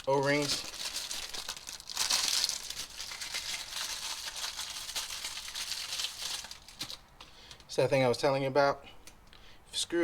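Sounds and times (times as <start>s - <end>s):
plastic wrapping crinkling: 0.0s - 7.7s.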